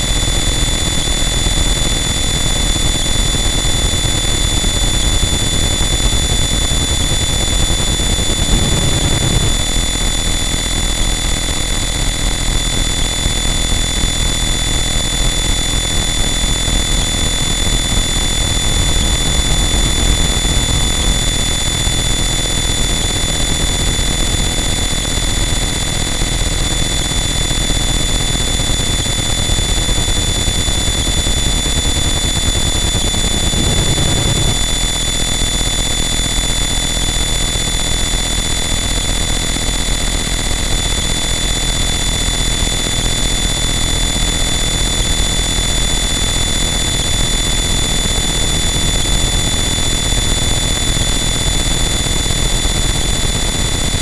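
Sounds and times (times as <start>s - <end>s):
dense distorted static: 6.5s - 10.5s, 32.4s - 34.9s.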